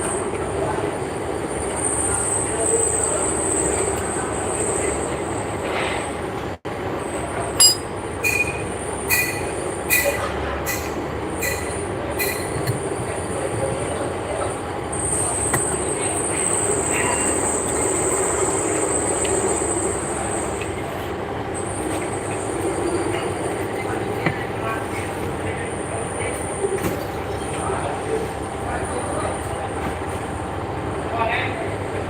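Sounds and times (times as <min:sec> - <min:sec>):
constant mechanical noise: 0:00.0 - 0:32.0
metal struck ringing: 0:07.6 - 0:07.9.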